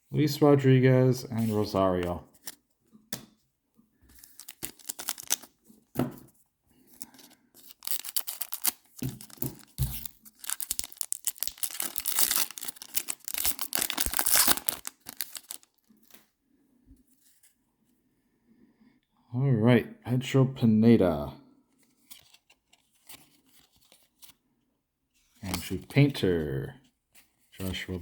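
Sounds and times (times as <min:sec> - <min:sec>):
wrapper ripping and crinkling: 0:04.1 - 0:05.6, 0:07.0 - 0:16.2.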